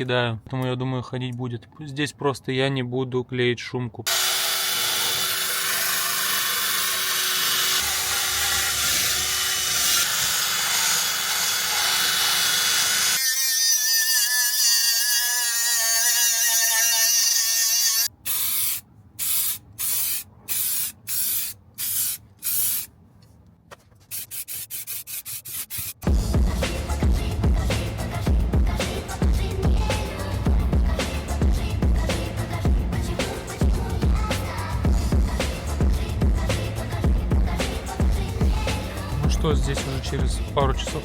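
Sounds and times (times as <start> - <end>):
aerosol spray can hissing: 18.3 - 22.9, 24.1 - 26.0
spray can rattling when shaken: 18.4 - 22.9.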